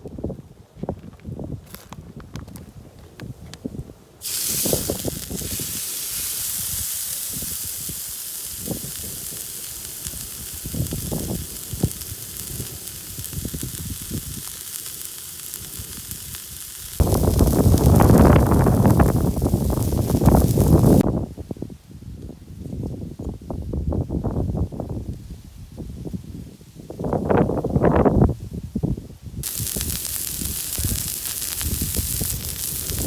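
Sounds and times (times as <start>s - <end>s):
wind on microphone: 0.0s - 14.6s, 16.9s - 33.0s
steak sizzling in a hot pan: 4.2s - 21.0s, 29.4s - 33.0s.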